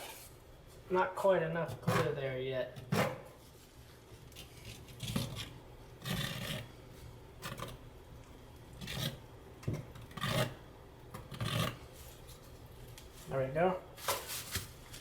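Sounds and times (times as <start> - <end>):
trowel scraping tile adhesive: 4.4 - 6.7, 8.8 - 9.2, 10.0 - 10.6, 11.2 - 11.9.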